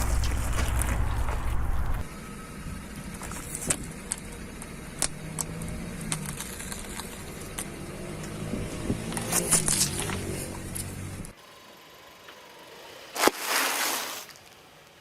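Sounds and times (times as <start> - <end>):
things crunching under tyres: 0.0 - 2.1, 2.9 - 11.4, 13.1 - 15.0
car engine rumbling: 0.0 - 13.1
steady car hum: 0.0 - 13.2.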